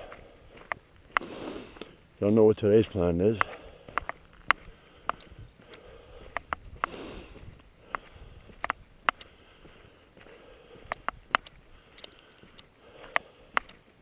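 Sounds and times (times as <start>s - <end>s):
footsteps on wet road: 0.0s - 14.0s
sharp clicks: 10.9s - 13.8s.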